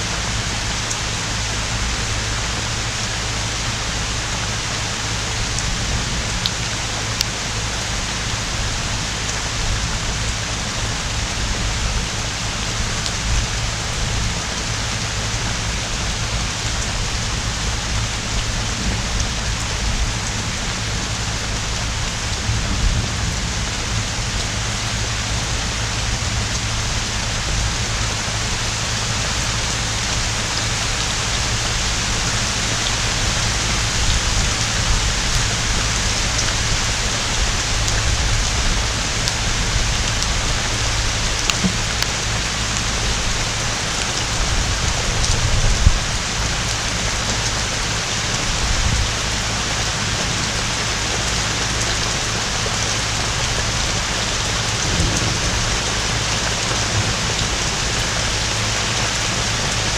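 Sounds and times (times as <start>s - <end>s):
heavy rain pouring: 0.0s - 59.9s
low rumble: 0.1s - 47.8s, 48.4s - 59.8s.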